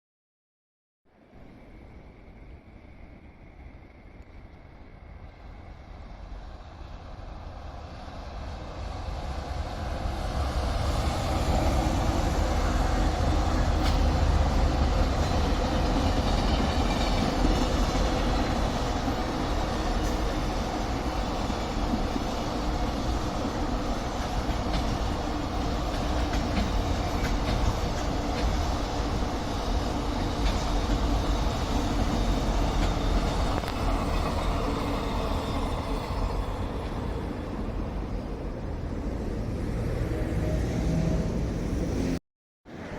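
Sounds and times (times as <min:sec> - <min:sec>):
train rumbling past: 0:01.1 - 0:42.9
clicking from rails: 0:13.6 - 0:14.3, 0:24.2 - 0:28.6.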